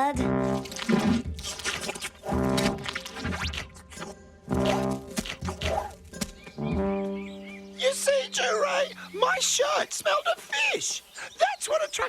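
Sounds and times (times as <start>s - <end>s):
cartoon soundtrack music: 0.0s - 9.0s
comic scratching effects: 0.4s - 5.9s.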